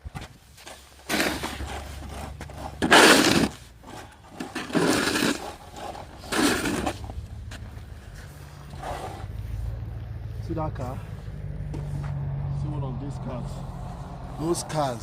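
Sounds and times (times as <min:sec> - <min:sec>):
snow shovel scraping snow: 0:00.6 - 0:07.2, 0:08.2 - 0:09.6.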